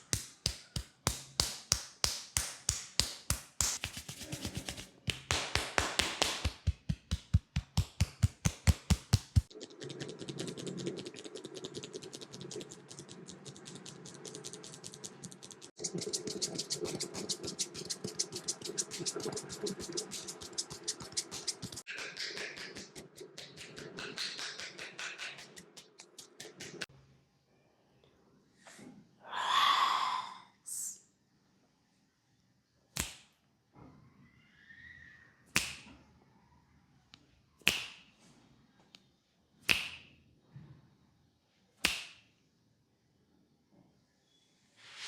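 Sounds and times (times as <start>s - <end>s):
hands tapping and slapping in massage: 0.0s - 9.5s, 33.0s - 33.4s, 35.6s - 36.0s, 37.6s - 38.1s, 39.7s - 40.1s, 41.8s - 42.3s.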